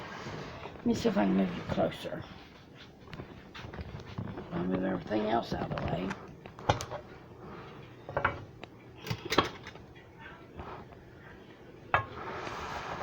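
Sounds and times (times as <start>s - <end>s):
kitchenware clattering: 8.0s - 9.9s.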